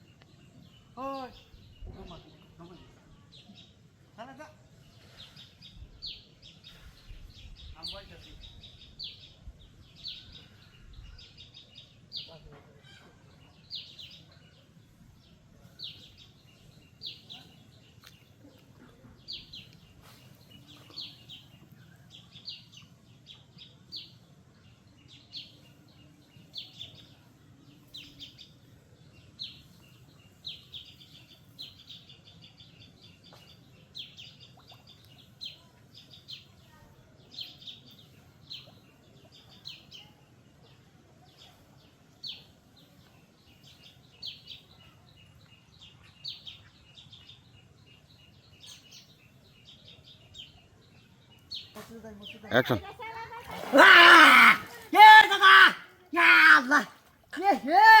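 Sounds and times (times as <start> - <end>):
faint low background noise: 0.0 - 53.9
bird chirping: 41.4 - 53.3.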